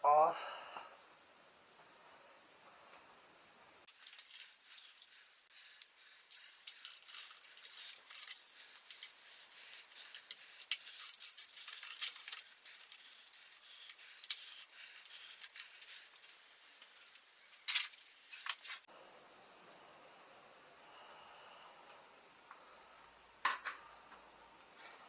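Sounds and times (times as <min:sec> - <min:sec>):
metal tools clinking: 0:03.9 - 0:18.9.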